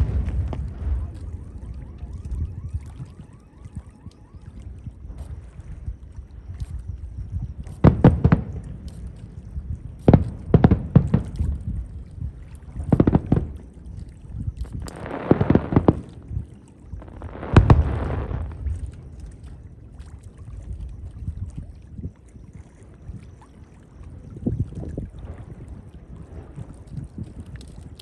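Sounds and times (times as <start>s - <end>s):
fireworks crackling: 0.0s - 2.7s, 7.7s - 9.4s, 10.0s - 11.8s, 12.8s - 13.6s, 14.8s - 19.0s
fireworks booming: 0.0s - 2.8s, 7.6s - 9.2s, 10.0s - 11.9s, 12.8s - 13.7s, 14.8s - 18.8s
small fireworks pops: 0.0s - 21.0s, 25.2s - 28.0s.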